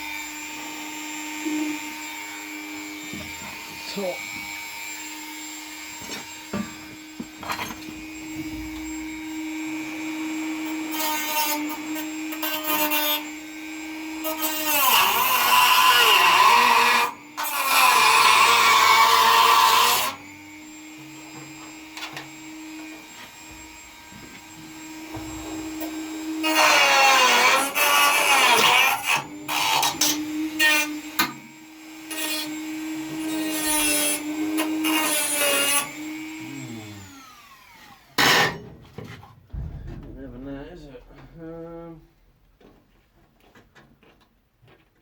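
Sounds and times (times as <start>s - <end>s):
power grinder on sheet steel: 0.0s - 38.8s
sharp knock: 39.5s - 41.3s.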